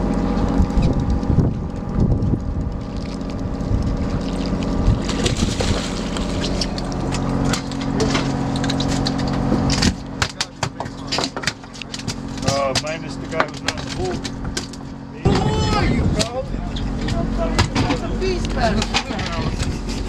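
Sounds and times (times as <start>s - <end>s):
boat engine humming: 0.0s - 20.0s
sharp clicks and knocks: 6.4s - 14.8s.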